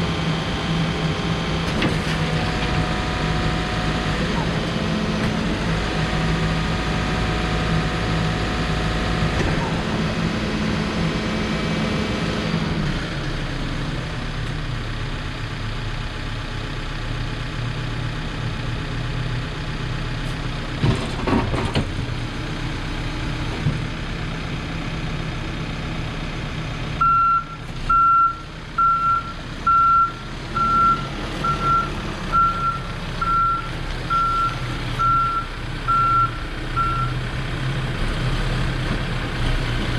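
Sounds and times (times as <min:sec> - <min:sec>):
diesel engine running: 0:00.0 - 0:39.9
reversing alarm beeps: 0:27.0 - 0:37.2.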